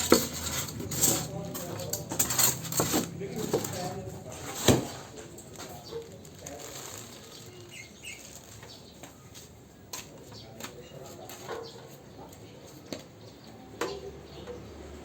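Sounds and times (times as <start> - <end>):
soft rustling: 0.0 - 9.6.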